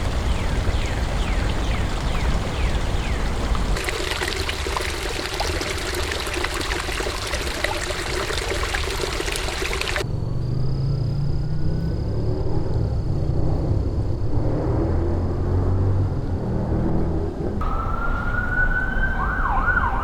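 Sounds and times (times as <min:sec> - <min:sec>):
water trickling and pouring: 0:00.0 - 0:10.0.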